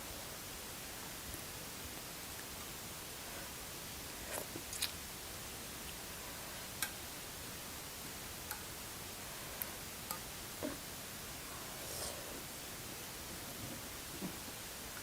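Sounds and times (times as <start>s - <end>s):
steady hiss: 0.0s - 15.0s
eating clicks and smacks: 4.6s - 5.0s.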